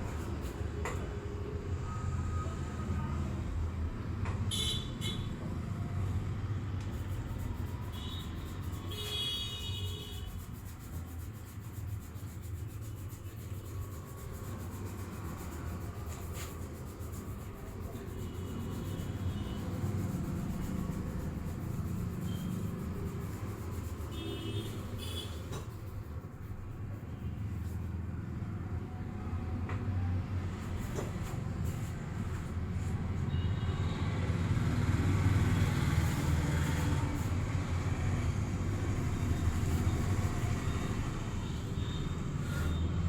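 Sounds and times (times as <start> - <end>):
low rumble of road traffic: 0.0 - 43.0.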